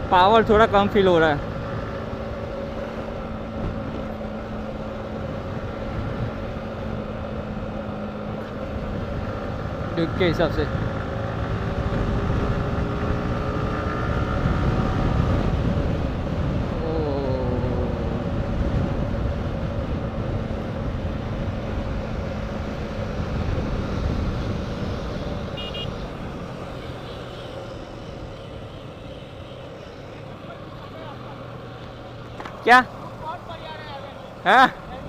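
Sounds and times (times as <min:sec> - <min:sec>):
motorcycle engine: 0:00.0 - 0:35.0
wind noise: 0:10.7 - 0:26.9.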